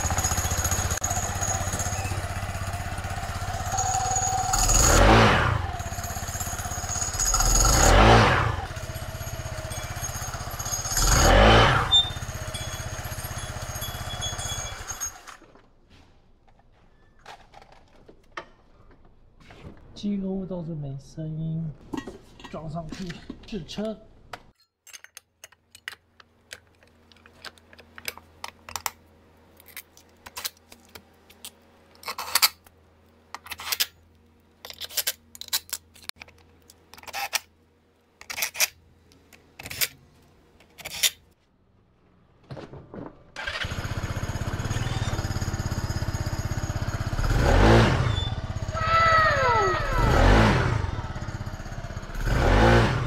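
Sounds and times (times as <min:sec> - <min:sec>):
scooter engine running: 0:00.0 - 0:15.5, 0:43.4 - 0:53.0
metallic clinks of tools: 0:08.8 - 0:11.3, 0:11.9 - 0:15.3.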